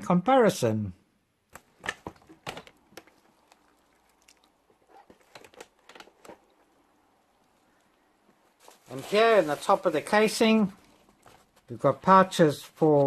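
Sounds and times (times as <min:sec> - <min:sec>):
faint clicks and knocks of handling: 0:01.5 - 0:08.9, 0:10.7 - 0:11.8.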